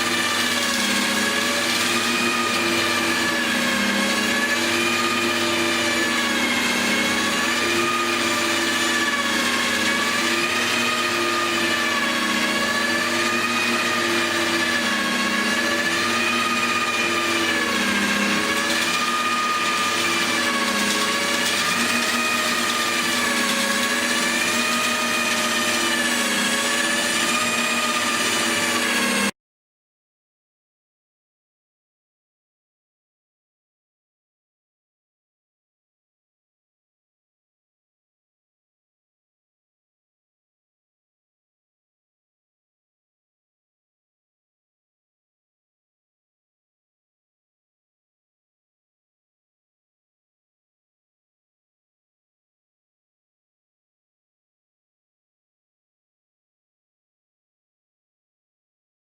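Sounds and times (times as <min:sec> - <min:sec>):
electric drill whining: 0:00.0 - 0:29.4.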